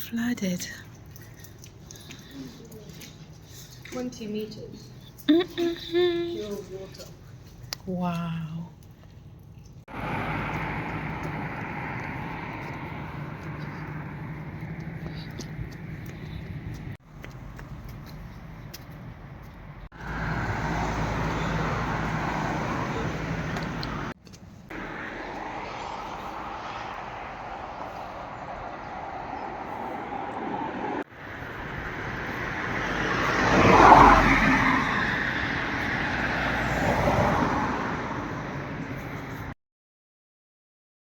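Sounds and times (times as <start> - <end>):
road traffic noise: 0.0 - 39.6
vehicle passing close: 9.9 - 17.0, 19.9 - 39.5.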